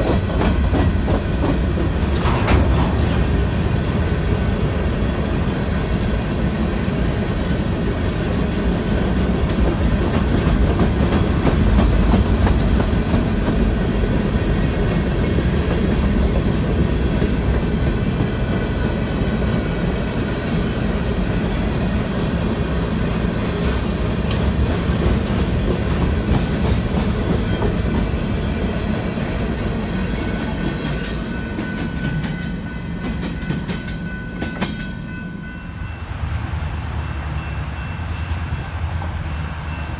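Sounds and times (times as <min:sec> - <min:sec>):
wheels clacking over rail joints: 0:00.0 - 0:04.7, 0:23.4 - 0:34.9
train cars rumbling past: 0:00.0 - 0:39.9.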